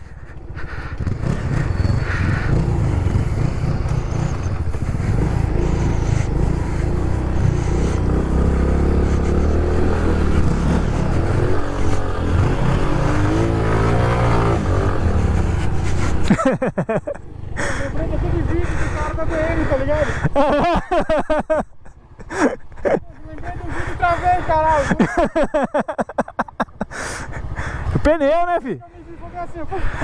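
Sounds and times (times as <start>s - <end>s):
motorcycle engine running: 0.0s - 21.1s.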